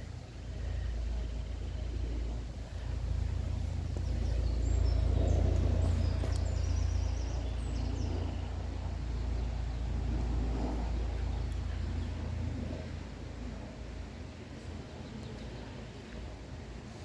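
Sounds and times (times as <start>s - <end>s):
small birds chirping: 0.0s - 12.5s.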